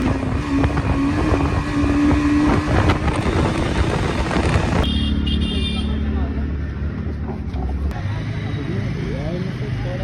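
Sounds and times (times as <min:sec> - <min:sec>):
wind rumbling on microphone: 0:00.0 - 0:04.9.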